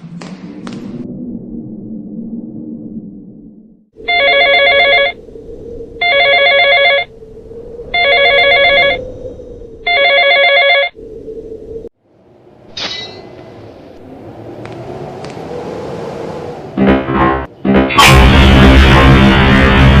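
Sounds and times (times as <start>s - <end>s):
telephone ringing with warble: 4.1s - 5.2s, 6.0s - 7.1s, 8.0s - 9.0s, 9.9s - 11.0s
music: 16.8s - 20.0s.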